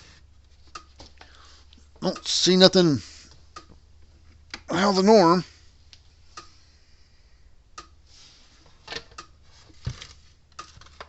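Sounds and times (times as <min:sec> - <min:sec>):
small irregular clicks: 0:00.5 - 0:02.3, 0:03.3 - 0:04.7.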